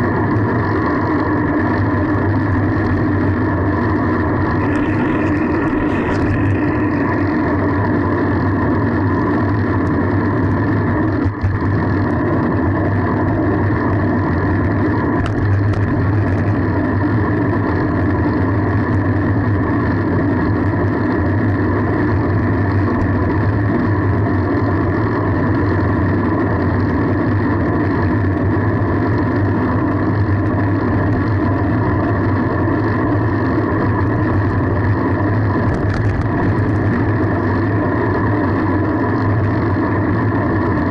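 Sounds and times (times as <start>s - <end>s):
wind and road noise: 0.0s - 40.9s.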